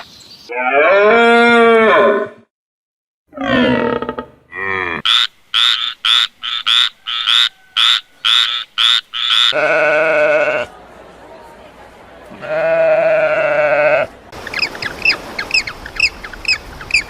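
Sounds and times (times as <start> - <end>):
falling animal calls: 3.3 - 10.7
long steady animal call: 3.3 - 10.7.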